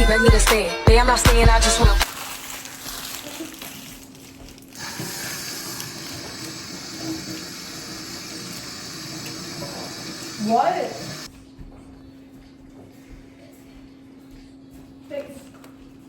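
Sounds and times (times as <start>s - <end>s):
kitchen tap running water: 4.7s - 11.3s.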